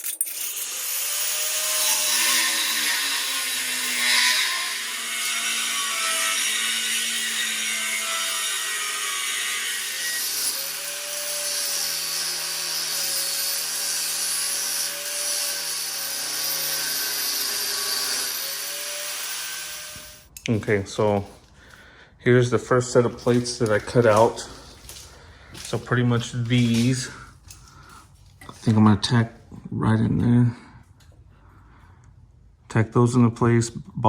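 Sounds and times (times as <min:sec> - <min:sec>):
power tool grinding steel: 0:00.0 - 0:20.3, 0:22.6 - 0:27.3.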